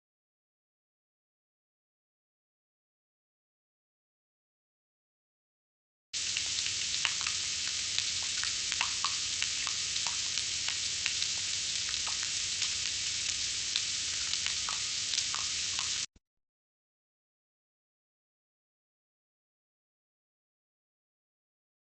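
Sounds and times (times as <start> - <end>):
food deep-frying in oil: 6.2 - 16.1.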